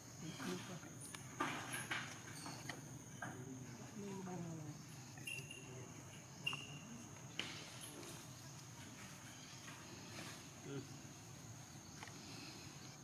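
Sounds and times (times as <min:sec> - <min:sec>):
high-pitched insect drone: 0:01.8 - 0:13.0.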